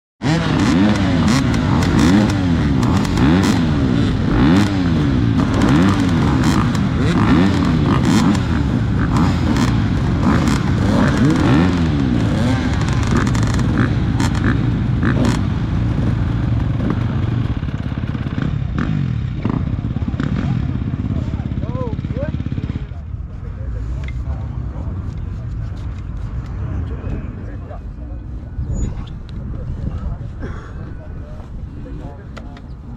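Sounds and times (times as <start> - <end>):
dirt bike engine revving: 0.2 - 23.0.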